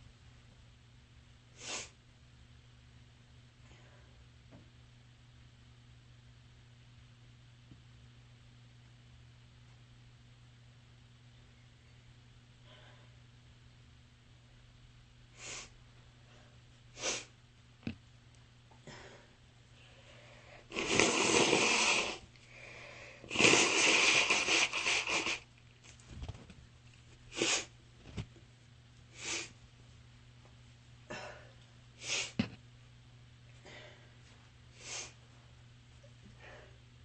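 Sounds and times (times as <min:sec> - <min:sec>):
person sniffling: 0:31.1 - 0:32.4.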